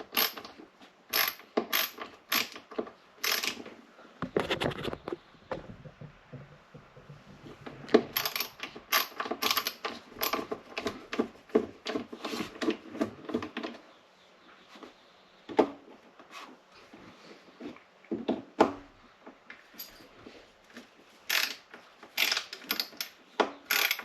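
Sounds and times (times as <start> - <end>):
screwdriver clicking and scraping: 1.1 - 3.7, 8.1 - 11.0, 21.3 - 21.6, 22.2 - 23.1, 23.7 - 24.0.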